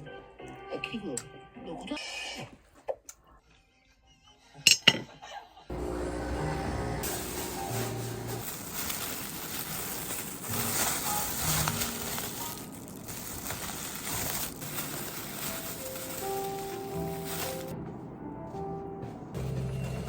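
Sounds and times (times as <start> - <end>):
background music held notes: 5.7 - 20.0.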